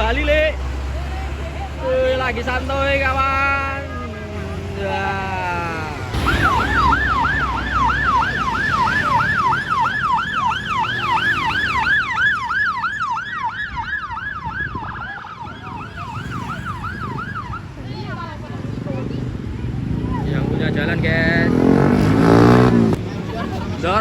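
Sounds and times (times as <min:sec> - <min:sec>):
low rumble of traffic: 0:00.0 - 0:24.0
vehicle siren yelping: 0:05.5 - 0:18.3.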